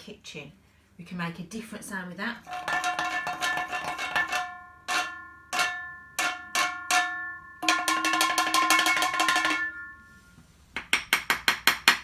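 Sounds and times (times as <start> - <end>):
spoon striking metal grater: 2.4 - 9.8.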